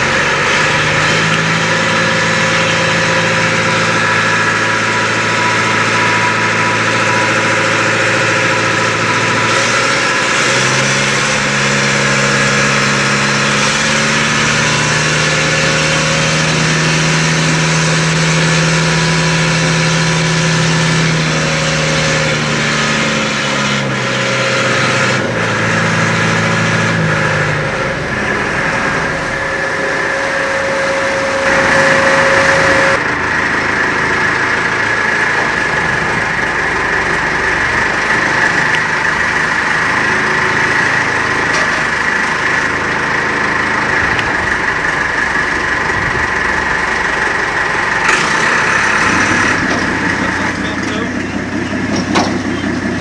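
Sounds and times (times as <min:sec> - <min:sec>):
steady high whine: 0:00.0 - 0:23.1, 0:25.2 - 0:53.0
boat engine running: 0:00.0 - 0:53.0
rush of noise: 0:25.2 - 0:53.0.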